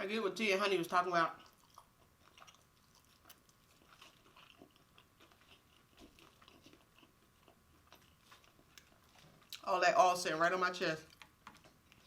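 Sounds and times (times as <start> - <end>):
chewing mouth clicks and smacks: 1.4 - 9.7, 11.0 - 12.0.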